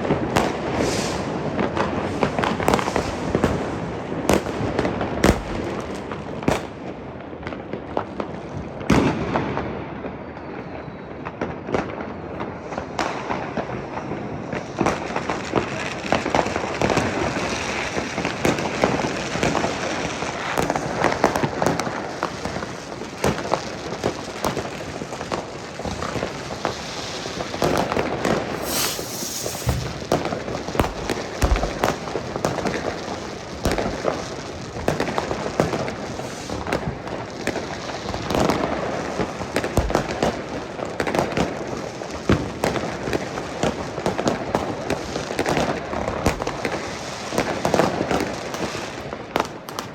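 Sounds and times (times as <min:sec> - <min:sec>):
fireworks crackling and popping: 0:00.0 - 0:09.7, 0:11.2 - 0:49.9
sharp firework bangs: 0:27.4 - 0:32.9.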